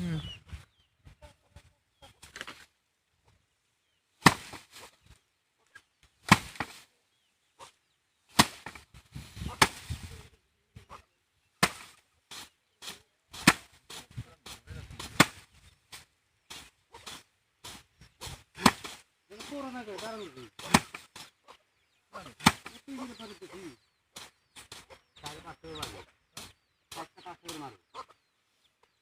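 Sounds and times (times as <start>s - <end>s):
rice sheaves whacking threshing surface: 4.2s - 5.0s, 6.2s - 6.9s, 8.3s - 10.1s, 11.6s - 21.3s, 22.3s - 23.4s.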